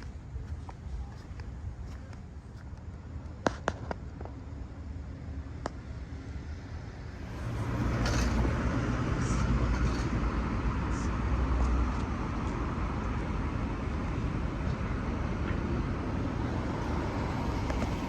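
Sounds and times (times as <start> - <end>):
steady traffic hum: 0.0 - 18.0
vehicle passing: 7.1 - 13.8, 15.0 - 18.0.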